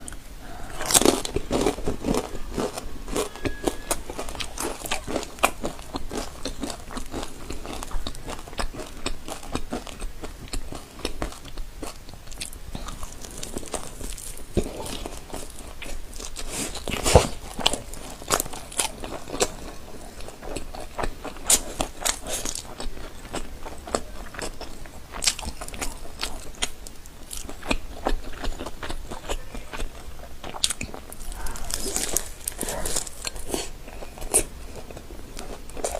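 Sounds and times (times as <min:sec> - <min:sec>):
chewing crunchy food: 0:00.0 - 0:35.9.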